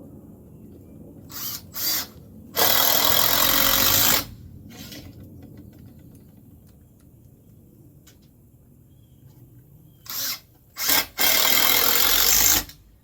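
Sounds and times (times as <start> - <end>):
power drill running: 1.3 - 5.1, 10.1 - 12.8.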